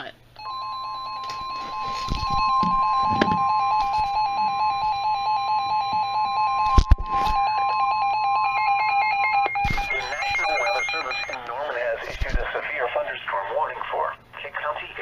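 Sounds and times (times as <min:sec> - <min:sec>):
alarm tone with pulsing beep: 0:00.4 - 0:11.4.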